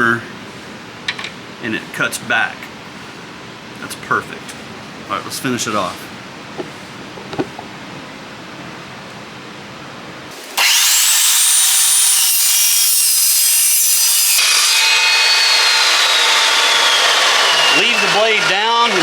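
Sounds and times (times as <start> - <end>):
chop saw cutting steel: 10.4 - 19.0.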